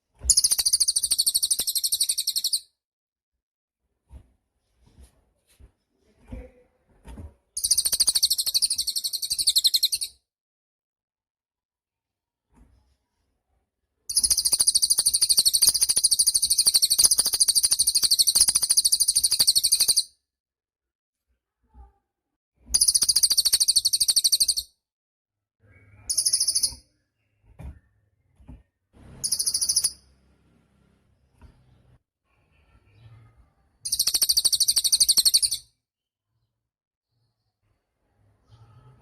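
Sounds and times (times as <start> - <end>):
songbird trilling: 0.3 - 2.6, 7.6 - 10.1, 22.8 - 24.6, 26.1 - 26.8, 29.2 - 30.0, 33.9 - 35.6.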